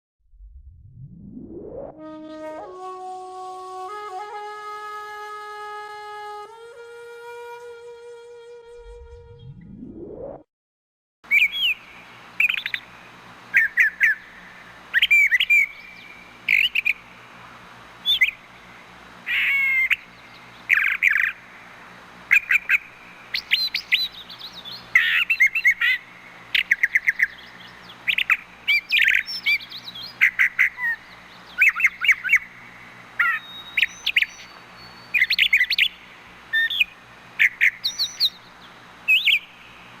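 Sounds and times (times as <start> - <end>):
bird singing chirping phrases: 11.3 - 17.2, 18.0 - 21.6, 22.3 - 39.9.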